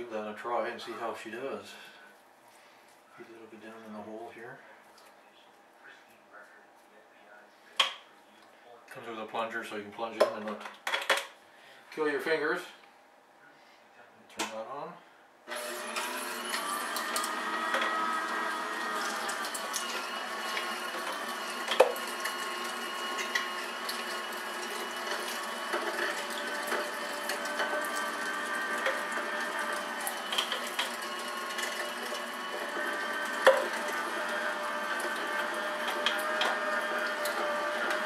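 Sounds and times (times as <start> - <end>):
meat grinder motor whining: 15.5 - 38.0.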